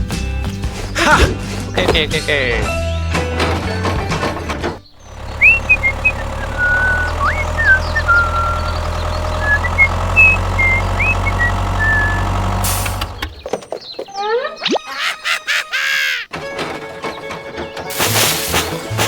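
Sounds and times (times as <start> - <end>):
engine droning: 0.2 - 13.6.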